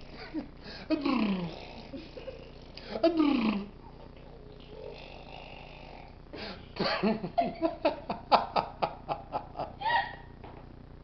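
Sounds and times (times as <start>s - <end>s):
person laughing: 0.1s - 3.4s, 6.8s - 10.3s.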